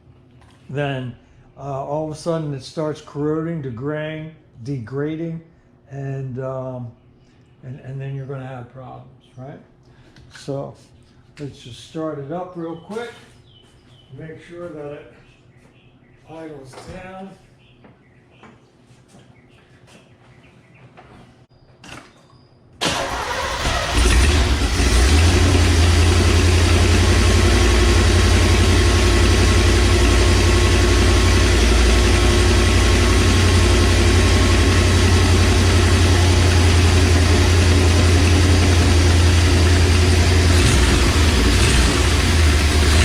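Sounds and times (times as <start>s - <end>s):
car engine starting and idling: 22.8s - 43.0s.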